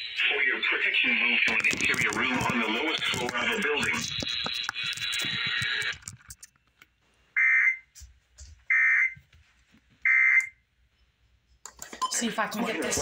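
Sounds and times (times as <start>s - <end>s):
buzzy digital chirps from radio: 0.0s - 6.0s.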